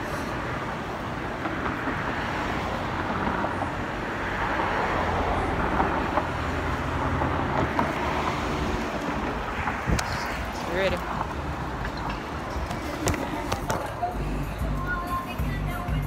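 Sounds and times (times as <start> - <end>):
vehicle passing with low rumble: 0.0 - 12.7
car and tyre noise: 0.0 - 16.0.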